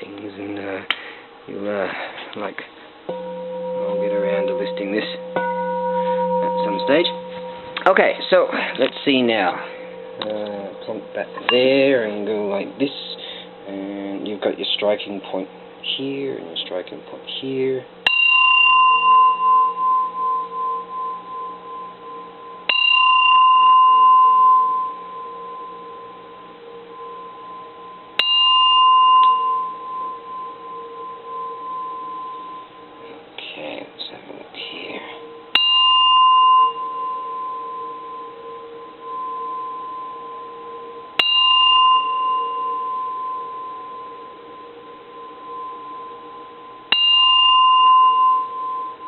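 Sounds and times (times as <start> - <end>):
bronze bell struck with wooden striker: 3.1 - 12.6, 18.0 - 26.2, 26.8 - 32.9, 35.5 - 44.4, 45.0 - 49.0.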